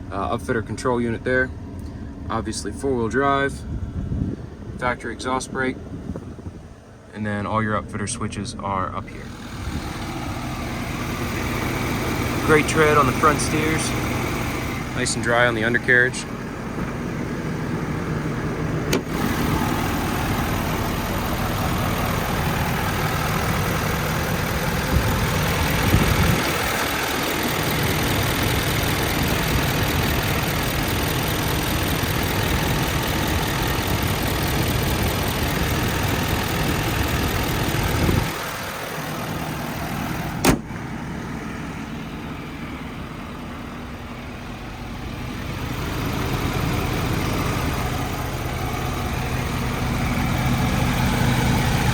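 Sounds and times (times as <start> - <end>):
diesel engine idling: 0.0 - 51.9
thump: 40.4 - 40.8.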